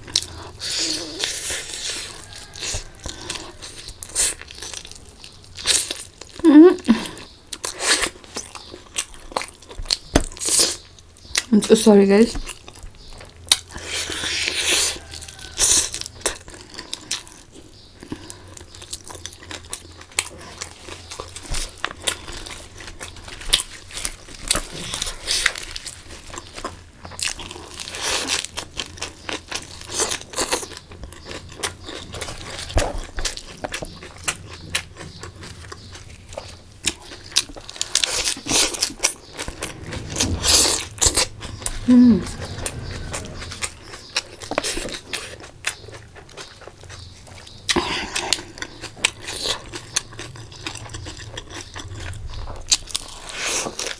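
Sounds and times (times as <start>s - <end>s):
crunching and chewing: 0.0s - 11.5s, 42.4s - 53.9s
breathy hissing sounds: 39.4s - 43.9s.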